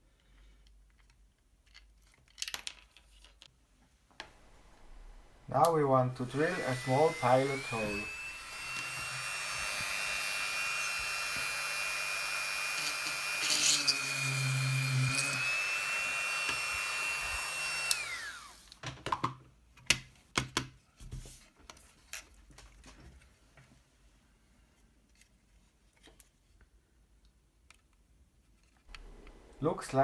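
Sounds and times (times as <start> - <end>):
electric drill drilling plastic: 4.5 - 18.8, 28.9 - 29.6.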